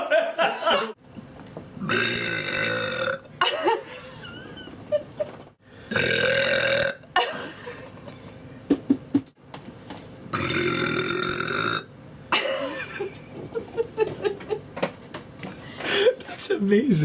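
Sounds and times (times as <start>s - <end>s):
woman burping: 1.8s - 3.3s, 5.9s - 7.6s, 10.4s - 12.8s.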